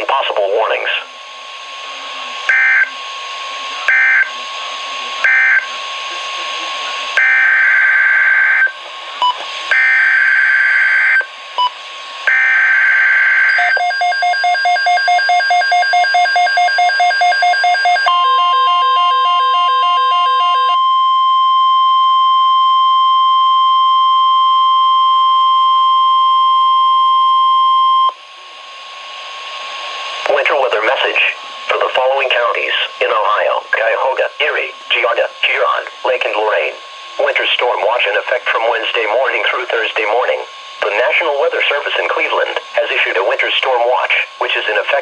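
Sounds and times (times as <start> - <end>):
steady warning alarm tone: 0.0 - 45.0
rapid pulsing beep: 5.3 - 5.7, 7.2 - 28.1.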